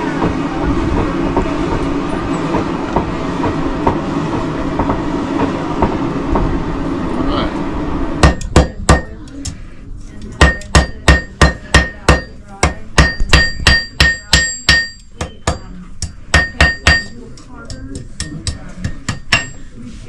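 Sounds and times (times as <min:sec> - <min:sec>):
hammer striking iron on anvil: 0:08.2 - 0:09.2, 0:10.4 - 0:19.8
anvil ringing: 0:10.5 - 0:17.2, 0:18.2 - 0:19.7.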